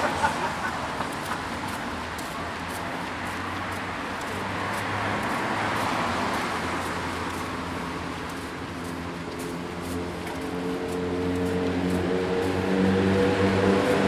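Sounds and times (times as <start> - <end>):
vehicle passing: 0.0 - 1.2, 10.5 - 14.0.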